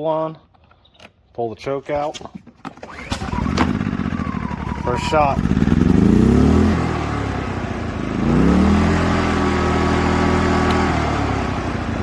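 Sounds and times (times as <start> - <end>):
generator engine running: 2.8 - 12.0.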